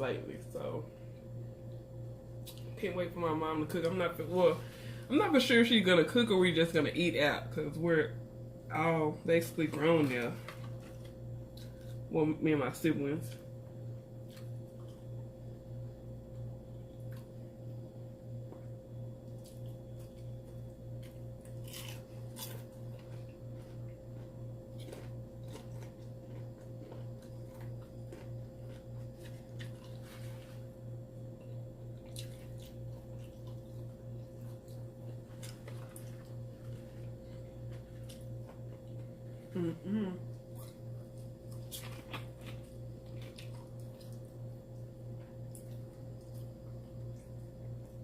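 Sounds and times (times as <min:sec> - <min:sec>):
pulsing low hum: 0:06.4 - 0:48.0
person chewing wetly: 0:10.5 - 0:12.1, 0:14.2 - 0:15.1, 0:19.2 - 0:39.4, 0:40.2 - 0:48.0.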